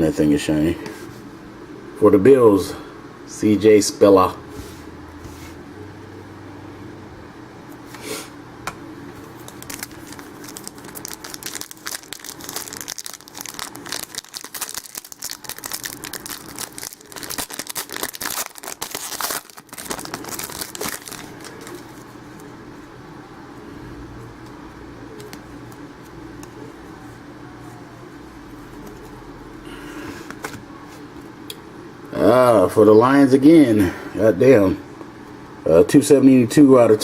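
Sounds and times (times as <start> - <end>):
low steady hum: 0.0 - 37.0
wrapper crinkling and tearing: 9.2 - 22.2.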